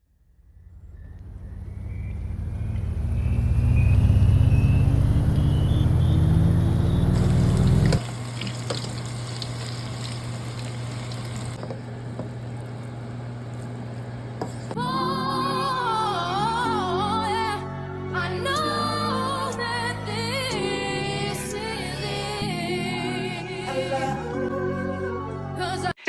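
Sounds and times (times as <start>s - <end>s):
motor rumbling: 4.6s - 15.1s.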